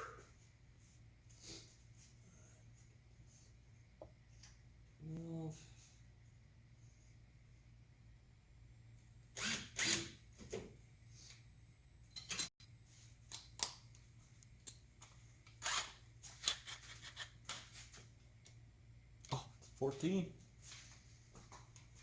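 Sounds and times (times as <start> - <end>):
metal tools clicking and scraping: 12.1 - 12.5.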